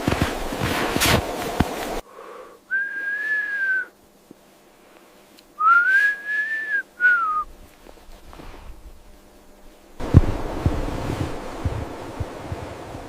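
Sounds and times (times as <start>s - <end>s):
person whistling: 2.7s - 3.9s, 5.6s - 7.5s.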